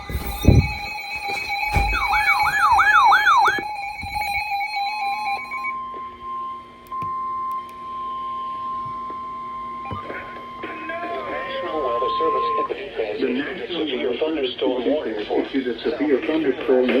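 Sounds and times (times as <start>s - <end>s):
low thumps: 0.0s - 4.5s
electronic siren wailing: 0.0s - 12.9s
steady electronic tones: 0.0s - 13.1s
high alert tone: 1.4s - 4.4s, 9.8s - 12.7s.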